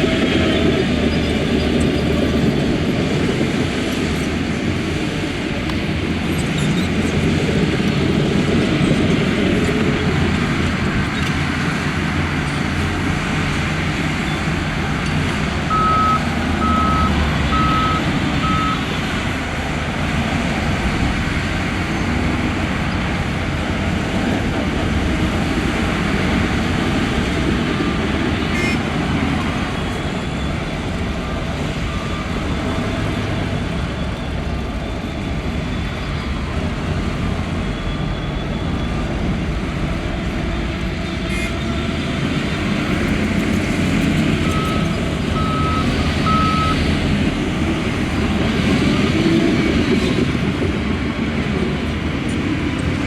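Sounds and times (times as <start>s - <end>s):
heavy diesel engines working: 0.0s - 53.0s
reversing alarm beeping: 14.2s - 19.5s, 27.7s - 39.9s, 44.3s - 49.7s.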